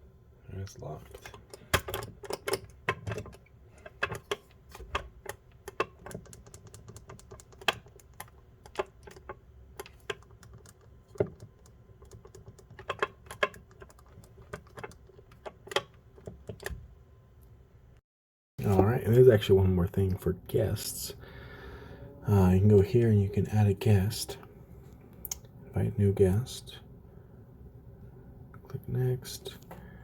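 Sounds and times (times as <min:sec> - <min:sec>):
faint steady hum: 0:18.6 - 0:30.0.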